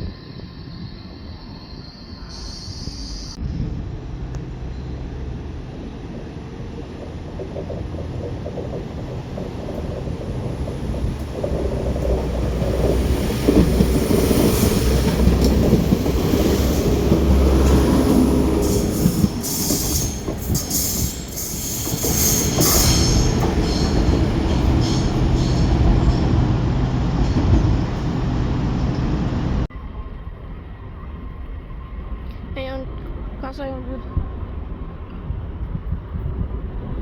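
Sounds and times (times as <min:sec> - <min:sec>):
train wheels rumbling on rails: 0:02.2 - 0:37.0
high-pitched wheel squeal: 0:17.8 - 0:26.6.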